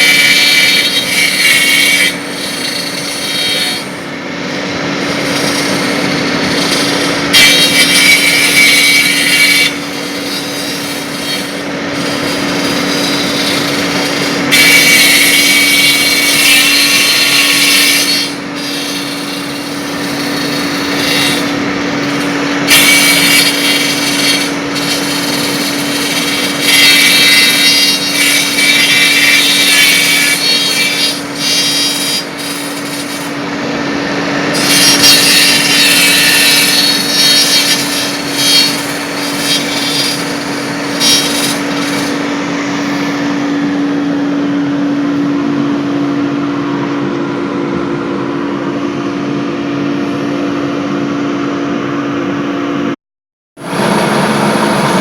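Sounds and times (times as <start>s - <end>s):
cutter cutting spinning wood: 0.0s - 50.9s, 53.6s - 55.0s
lathe motor humming: 0.0s - 53.0s, 53.6s - 55.0s.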